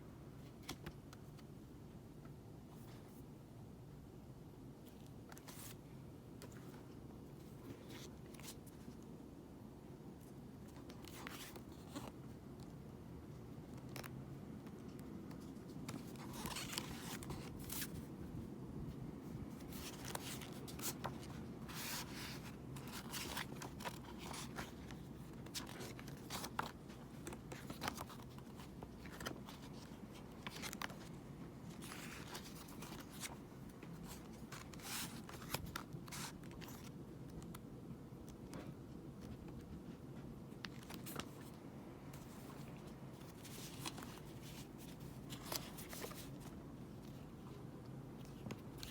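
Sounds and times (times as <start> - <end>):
faint steady hum: 0.0 - 48.9
paper and plastic rustling: 19.5 - 36.9, 42.2 - 47.5.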